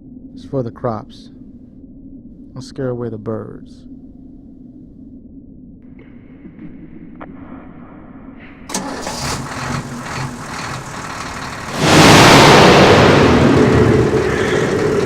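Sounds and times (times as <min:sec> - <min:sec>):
truck engine running: 0:08.7 - 0:15.0.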